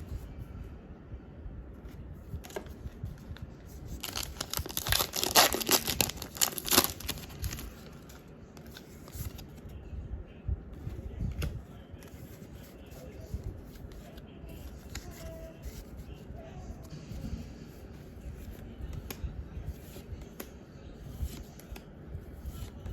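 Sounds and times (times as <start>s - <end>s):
foil wrapper tearing and crinkling: 4.0s - 7.6s
light handling noises: 10.7s - 22.9s.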